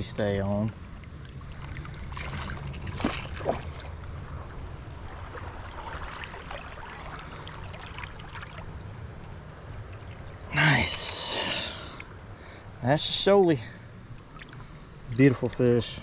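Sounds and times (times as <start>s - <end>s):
fish splashing: 1.5s - 8.7s
river water rushing: 1.6s - 9.5s.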